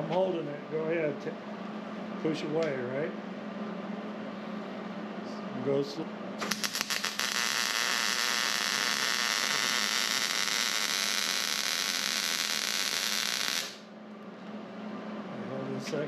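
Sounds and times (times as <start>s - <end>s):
welder arc hissing: 6.4s - 13.9s.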